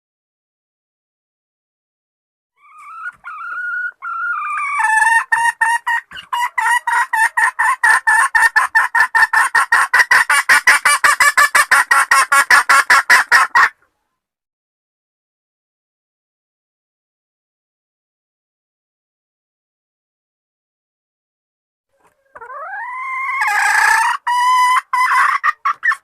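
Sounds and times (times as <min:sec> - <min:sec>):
hen calling: 0:02.6 - 0:13.8
hen clucking: 0:02.6 - 0:14.0, 0:21.9 - 0:26.0.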